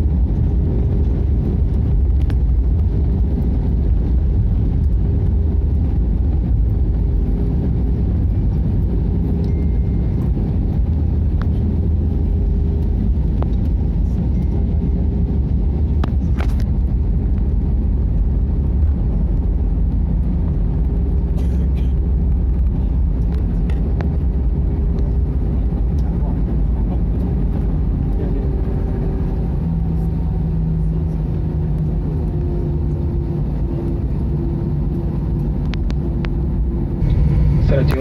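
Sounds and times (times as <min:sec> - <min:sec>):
aircraft cabin engine rumble: 0:00.0 - 0:38.0.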